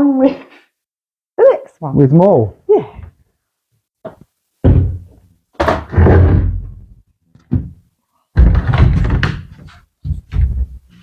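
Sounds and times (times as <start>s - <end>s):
heavy wooden sheets thudding down: 8.4s - 10.9s.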